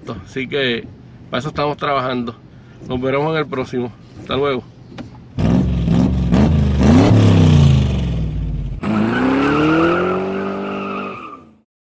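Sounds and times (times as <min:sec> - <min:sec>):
car engine revving: 0:05.4 - 0:11.1.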